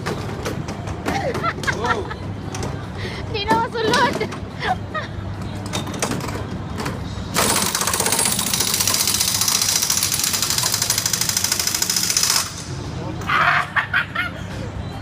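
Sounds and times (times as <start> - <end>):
pneumatic impact wrench rattling: 7.3 - 12.8.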